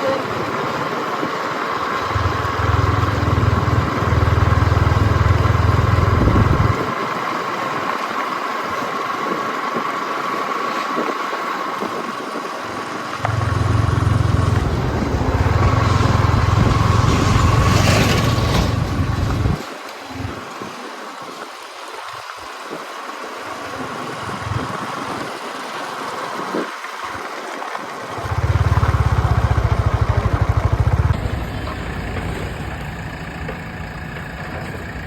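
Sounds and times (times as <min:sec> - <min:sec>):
vehicle engine running: 0:00.0 - 0:07.9, 0:12.6 - 0:19.6, 0:28.1 - 0:35.0
high whine: 0:01.9 - 0:06.9, 0:13.2 - 0:19.6
deep low rumble: 0:13.2 - 0:19.6.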